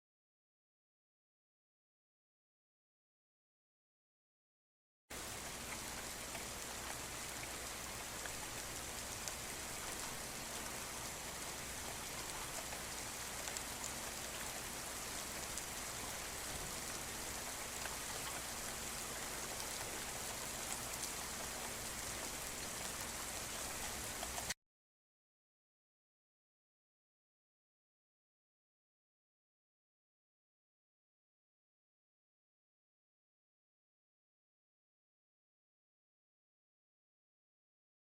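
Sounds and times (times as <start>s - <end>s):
steady rainfall: 5.1s - 24.6s.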